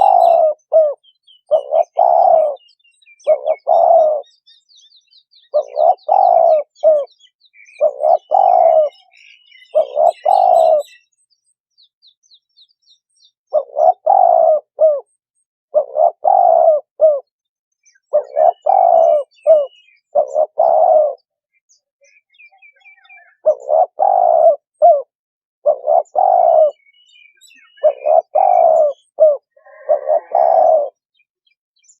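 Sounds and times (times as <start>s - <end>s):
dove cooing: 0.0s - 4.4s, 5.4s - 11.0s, 13.5s - 17.3s, 18.1s - 21.3s, 22.9s - 31.0s
faint small bird chirps: 0.0s - 25.0s, 25.6s - 32.0s.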